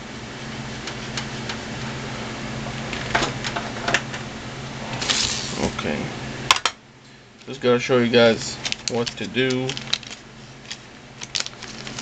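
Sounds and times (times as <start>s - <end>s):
computer humming: 0.0s - 12.0s.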